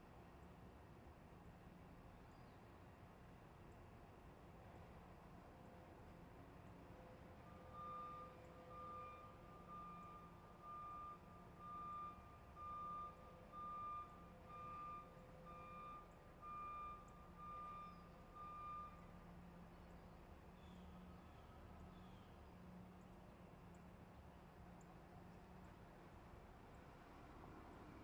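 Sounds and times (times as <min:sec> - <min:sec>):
truck reversing alarm beeping: 0:07.4 - 0:19.5.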